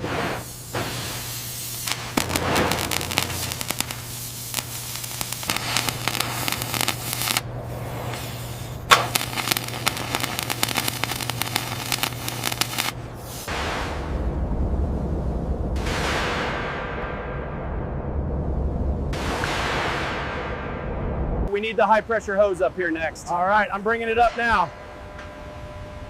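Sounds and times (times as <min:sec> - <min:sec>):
steady low hum: 0:00.2 - 0:19.4
crackling and popping: 0:01.8 - 0:07.5, 0:08.9 - 0:13.0.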